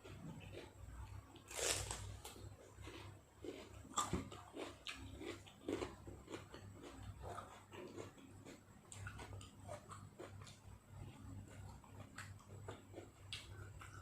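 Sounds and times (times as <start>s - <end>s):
person chewing and biting: 1.4s - 10.6s.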